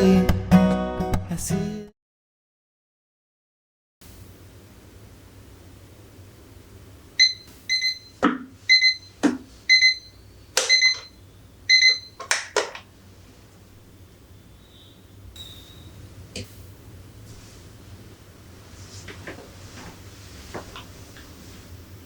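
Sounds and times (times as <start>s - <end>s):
low steady hum: 4.0s - 22.0s
sharp clicks and knocks: 11.9s - 12.9s.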